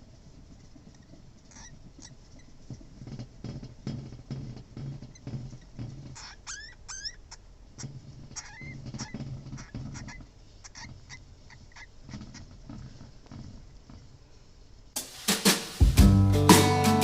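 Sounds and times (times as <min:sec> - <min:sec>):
hamster pups squeaking: 0:00.7 - 0:13.6.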